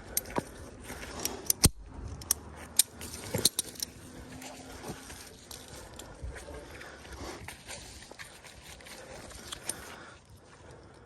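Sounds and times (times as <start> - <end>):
metal rigging hardware clinking: 0.0 - 6.2.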